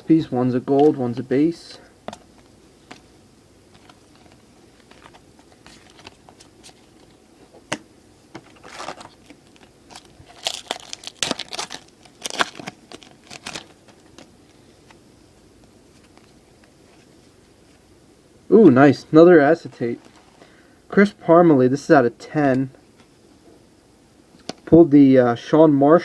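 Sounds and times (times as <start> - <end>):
cards being handled: 3.7 - 7.7, 8.4 - 15.0
foil wrapper crinkling and tearing: 8.4 - 14.3.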